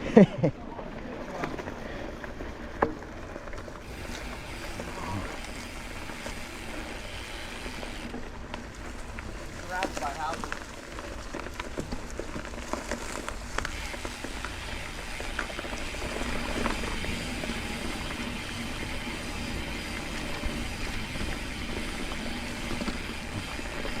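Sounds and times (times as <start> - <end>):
tyres rolling on dirt: 0.0 - 24.0
bike clicks and rattles: 0.2 - 24.0.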